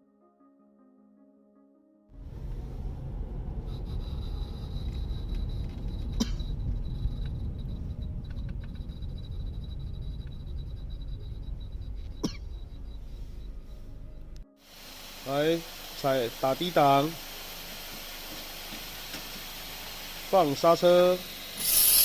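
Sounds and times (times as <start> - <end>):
low rumble: 2.1 - 14.5
metallic brake scraping whine: 2.2 - 17.6, 18.9 - 22.0.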